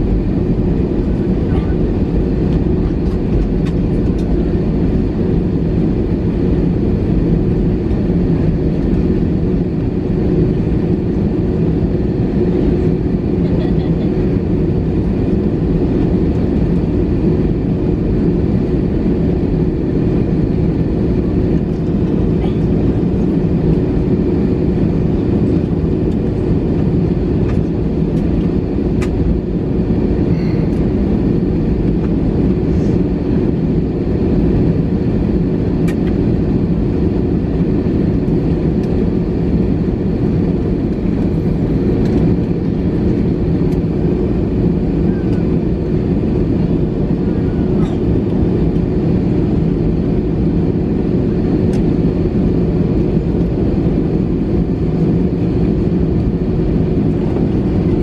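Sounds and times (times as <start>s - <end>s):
jet engine roar in cabin: 0.0s - 58.0s.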